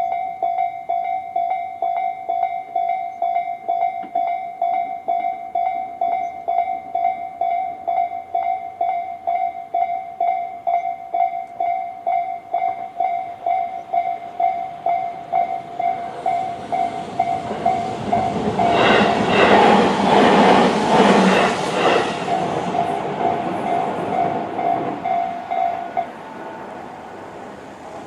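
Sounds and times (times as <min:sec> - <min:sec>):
level crossing alarm ringing: 0:00.0 - 0:20.3, 0:20.9 - 0:26.9
train wheels clacking over rail joints: 0:12.6 - 0:26.1.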